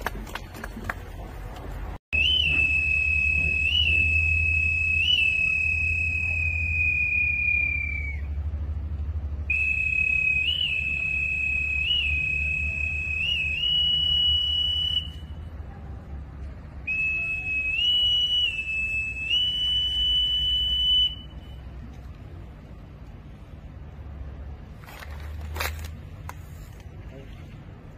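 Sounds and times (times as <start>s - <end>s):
low steady rumble: 0.0s - 27.9s
whistle blasts: 2.1s - 8.6s, 9.4s - 15.6s, 16.8s - 21.8s.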